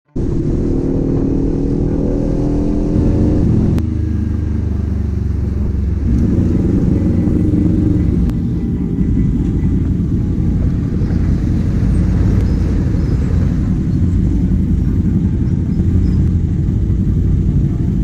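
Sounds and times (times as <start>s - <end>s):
motorcycle engine and exhaust: 0.1s - 18.0s.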